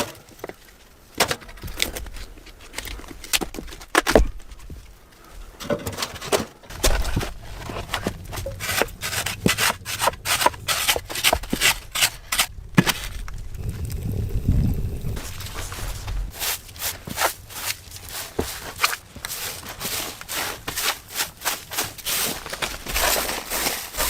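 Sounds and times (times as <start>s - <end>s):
wood scraping by hand: 6.1s - 24.0s.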